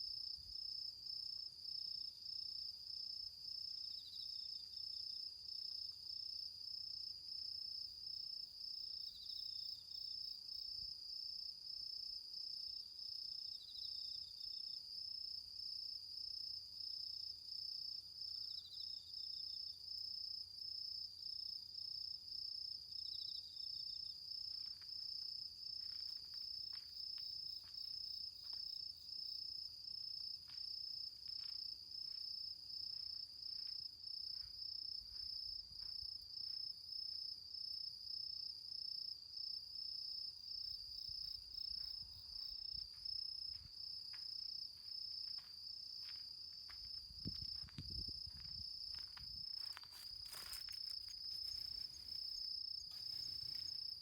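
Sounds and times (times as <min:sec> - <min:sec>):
crickets trilling: 0:00.0 - 0:54.0
rustle: 0:49.6 - 0:54.0.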